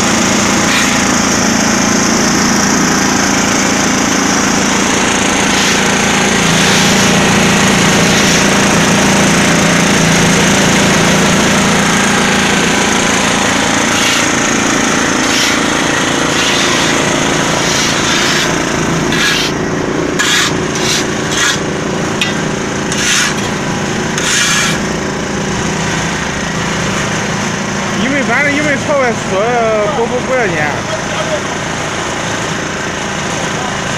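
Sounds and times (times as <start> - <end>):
gritty rasping churn: 0.0 - 31.6
concrete mixer diesel engine: 0.0 - 33.9
short sharp scrapes: 0.7 - 1.0, 5.5 - 5.9, 6.5 - 7.2, 8.0 - 8.5, 13.9 - 14.3, 15.2 - 17.0, 17.6 - 19.6, 20.2 - 23.5, 24.2 - 24.8.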